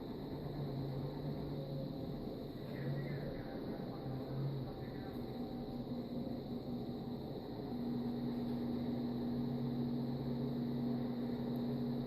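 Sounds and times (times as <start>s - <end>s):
low two-tone hum: 0.0s - 12.0s.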